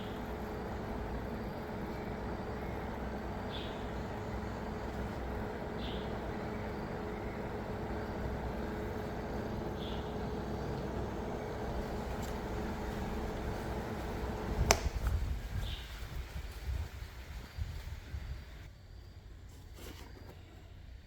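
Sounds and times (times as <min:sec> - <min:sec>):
small electric fan motor humming: 0:00.0 - 0:18.7
switch click: 0:14.6 - 0:15.1.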